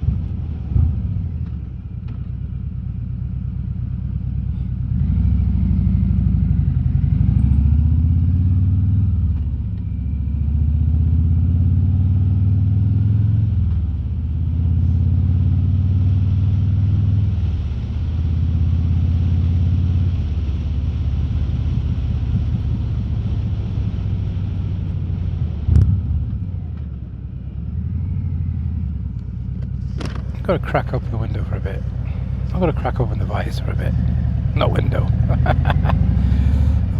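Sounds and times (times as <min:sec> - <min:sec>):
motorcycle engine running: 0:18.5 - 0:36.9.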